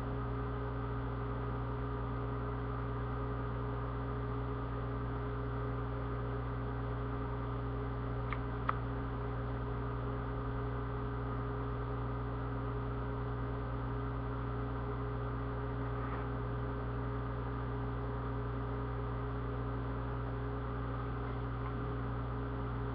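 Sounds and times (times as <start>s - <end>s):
steady electrical hum: 0.0s - 22.9s
small clicks: 8.2s - 8.8s.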